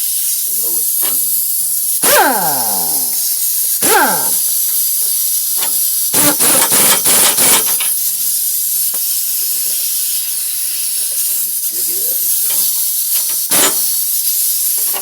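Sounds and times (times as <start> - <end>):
impact wrench hammering: 2.0 - 4.6, 6.2 - 7.4
impact wrench whirring: 2.0 - 4.6, 6.2 - 7.6.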